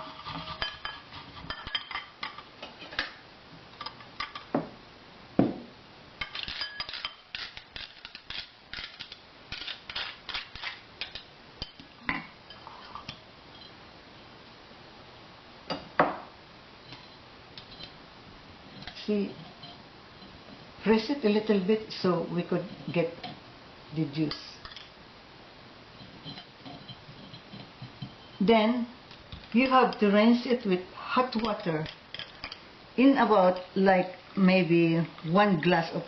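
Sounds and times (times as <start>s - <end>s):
utensils clinking against dishes: 6.2s - 11.9s, 26.0s - 28.4s.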